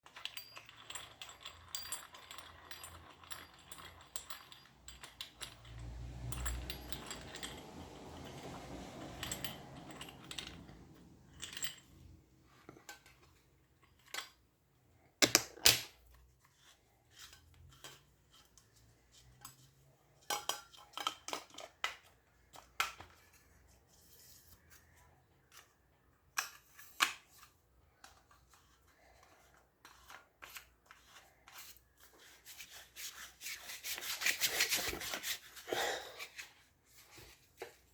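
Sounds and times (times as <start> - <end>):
rustling and scraping of fan parts: 0.1 - 14.6, 16.0 - 37.9
sharp clicks and knocks: 15.2 - 15.9.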